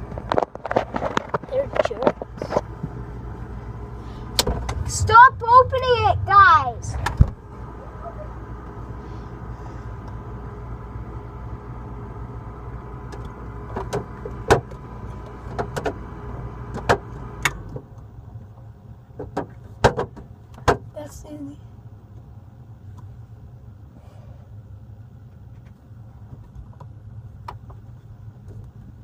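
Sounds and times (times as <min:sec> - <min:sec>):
refrigerator motor humming: 0:00.0 - 0:29.0
sharp clicks and knocks: 0:13.1 - 0:16.0, 0:19.2 - 0:20.9.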